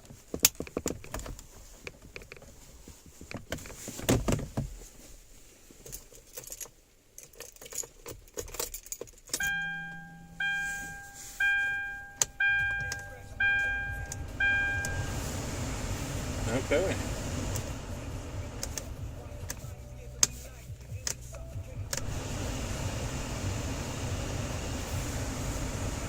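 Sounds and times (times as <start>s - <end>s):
car warning chime dinging: 9.4s - 16.9s.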